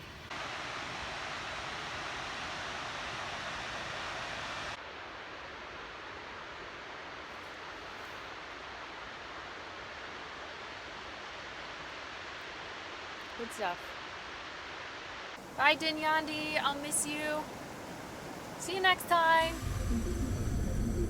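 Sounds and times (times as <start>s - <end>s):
waterfall roaring: 15.4s - 21.0s.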